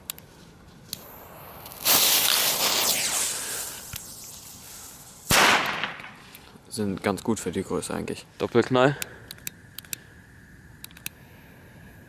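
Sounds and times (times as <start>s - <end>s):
firecracker hiss: 1.0s - 6.6s
firecracker bang: 1.5s - 6.3s.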